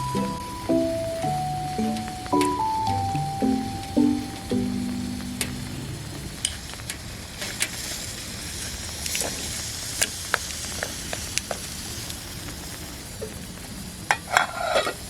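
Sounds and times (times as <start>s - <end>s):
food sizzling in a pan: 4.6s - 15.0s
sharp pops and crackles: 5.2s - 14.5s.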